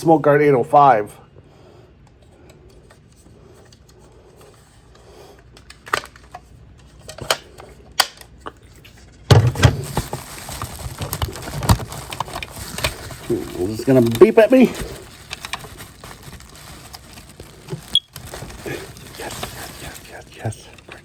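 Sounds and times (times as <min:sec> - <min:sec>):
rustling and clattering: 0:08.5 - 0:20.0.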